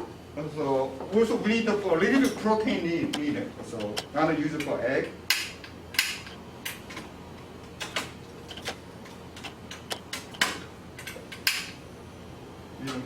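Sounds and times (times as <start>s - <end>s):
low steady background hum: 0.0s - 13.0s
kitchen utensils and dishes clicking: 7.8s - 8.8s.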